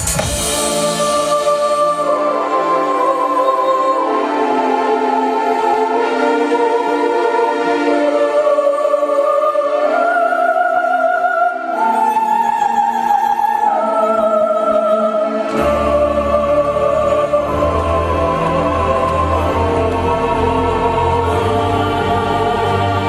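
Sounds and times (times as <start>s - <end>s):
soprano voice singing: 0.4s - 23.0s
synth backing: 13.6s - 23.0s.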